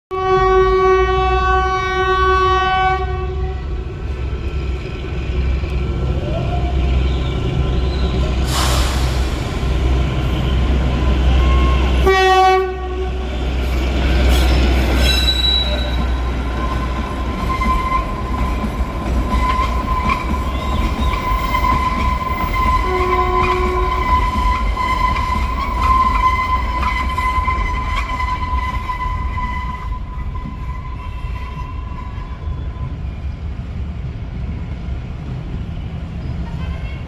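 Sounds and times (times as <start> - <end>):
train horn blast: 0.1 - 3.8, 10.2 - 13.6, 21.5 - 32.8
train running rumble: 0.3 - 37.0.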